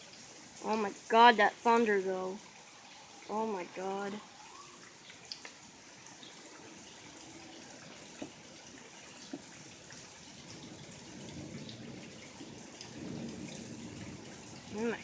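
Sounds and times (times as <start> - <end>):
rain falling and dripping: 0.0 - 15.0
sharp drip taps: 8.0 - 10.1.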